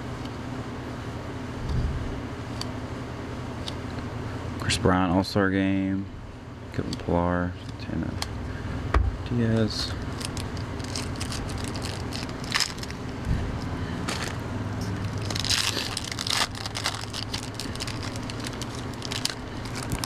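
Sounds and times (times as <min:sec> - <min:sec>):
low hum: 0:08.2 - 0:20.0
trading cards flicking and scraping: 0:09.5 - 0:20.0.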